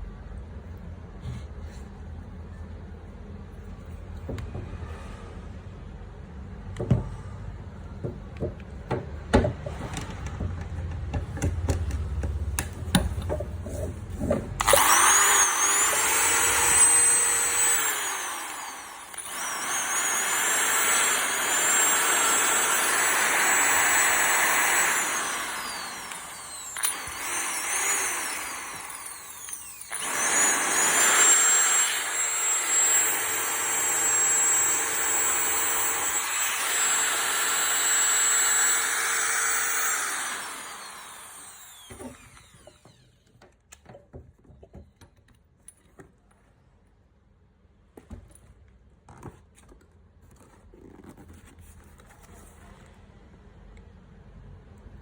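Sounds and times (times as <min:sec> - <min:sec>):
power tool motor whining: 0:14.6 - 0:43.2
power tool handling clicks: 0:25.2 - 0:30.5.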